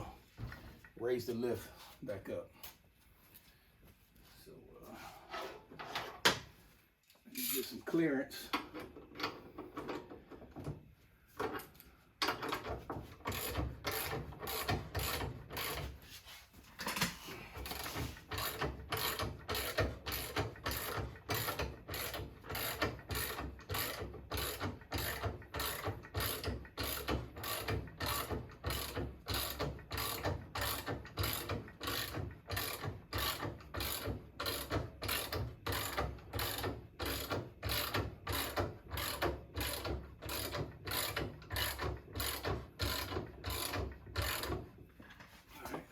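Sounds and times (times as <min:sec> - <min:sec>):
ratchet wrench clicking: 0:18.3 - 0:44.6.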